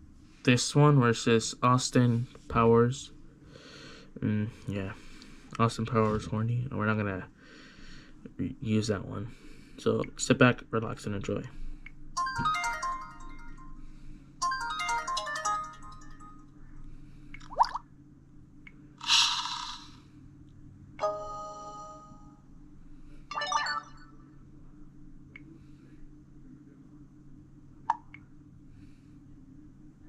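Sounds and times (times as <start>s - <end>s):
smartphone notification tones: 12.2s - 13.6s, 14.4s - 16.4s, 23.3s - 24.2s.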